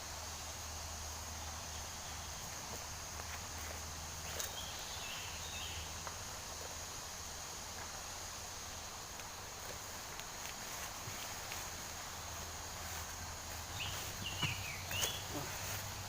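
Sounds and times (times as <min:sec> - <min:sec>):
insects chirring: 0:00.0 - 0:16.0
faint chirp: 0:13.7 - 0:15.8.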